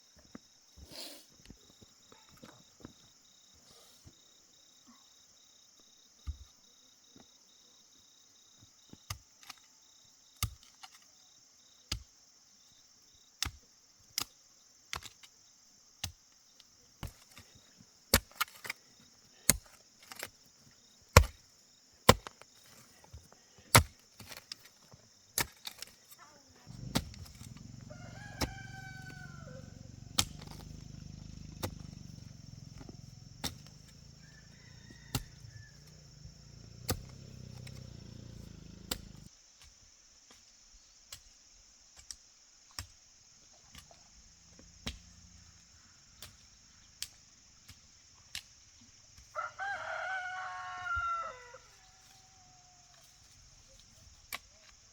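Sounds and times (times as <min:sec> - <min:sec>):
rooster crowing: 0:26.7 - 0:39.2, 0:49.3 - 0:53.0
low steady rumble: 0:26.7 - 0:39.3.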